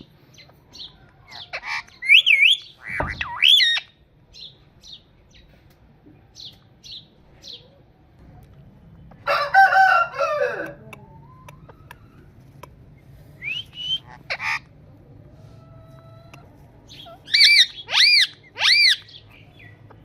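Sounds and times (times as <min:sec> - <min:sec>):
rooster crowing: 0:09.2 - 0:10.9
rising whistled bird calls: 0:13.4 - 0:14.2.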